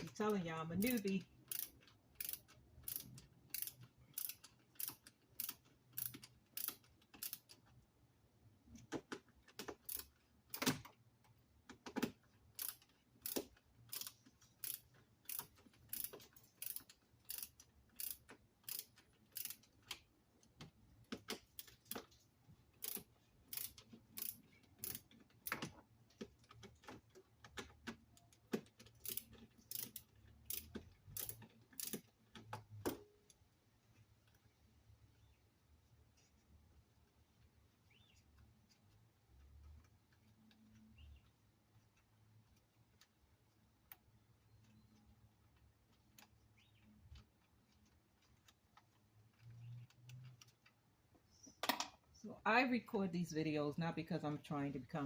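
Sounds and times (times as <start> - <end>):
hand ratchet clicking: 0.8 - 7.7, 9.4 - 10.8, 12.0 - 20.0, 22.7 - 25.7, 26.4 - 32.6.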